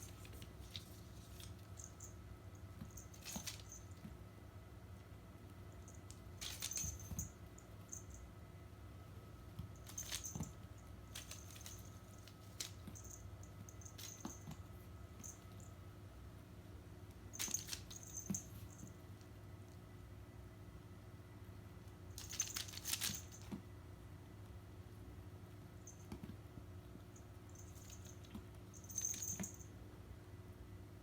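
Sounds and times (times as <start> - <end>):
toy clicks and rattles: 6.4 - 7.3, 9.8 - 10.5, 11.2 - 14.4, 22.2 - 23.5.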